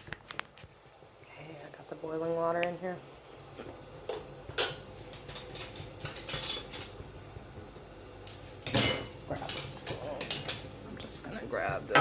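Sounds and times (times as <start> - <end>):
dishes and utensils clinking: 4.1 - 7.0, 8.3 - 10.7.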